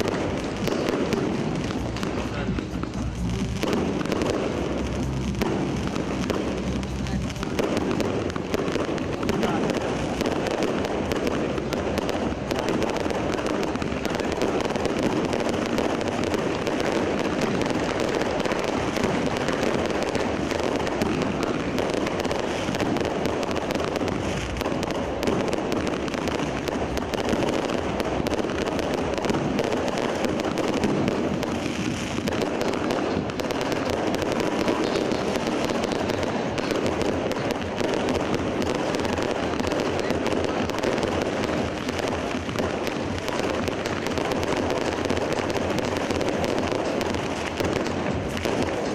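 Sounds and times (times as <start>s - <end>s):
fireworks bangs and crackling: 0.0s - 48.9s.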